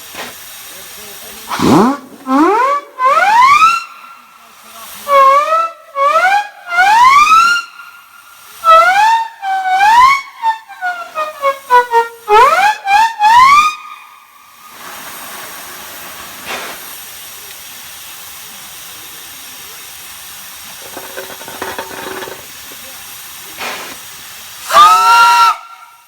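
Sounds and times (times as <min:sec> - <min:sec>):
steady hiss: 0:00.0 - 0:02.4, 0:03.7 - 0:05.2, 0:07.8 - 0:08.7, 0:14.2 - 0:26.0
whistle toots: 0:01.5 - 0:04.3, 0:05.1 - 0:14.1, 0:24.6 - 0:26.0.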